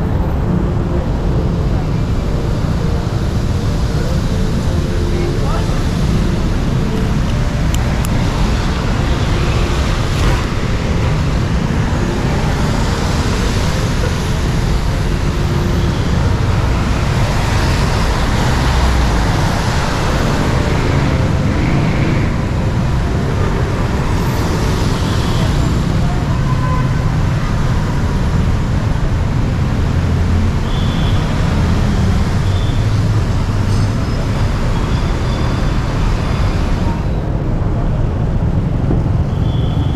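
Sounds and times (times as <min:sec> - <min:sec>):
city road traffic rumble: 0:00.0 - 0:39.9.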